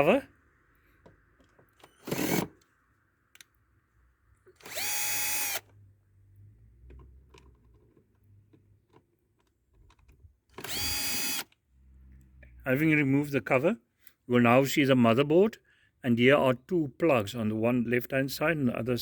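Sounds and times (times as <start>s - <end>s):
electric drill whine: 1.8s - 2.6s, 4.6s - 5.7s, 10.6s - 11.5s
small clicks and handling knocks: 6.8s - 10.6s.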